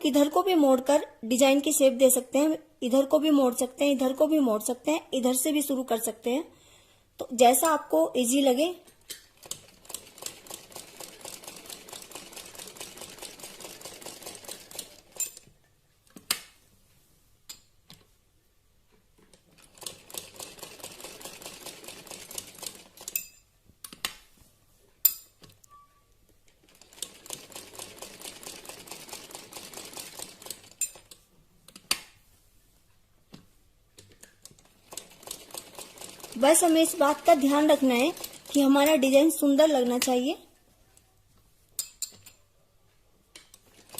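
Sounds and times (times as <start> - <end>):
sewing machine stitching: 9.1 - 15.5, 19.3 - 23.2, 26.6 - 31.1, 34.5 - 39.0, 43.6 - 43.9.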